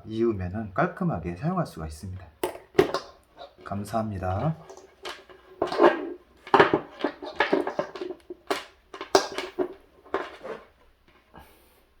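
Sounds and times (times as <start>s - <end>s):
knocks and clatter: 2.4s - 10.7s.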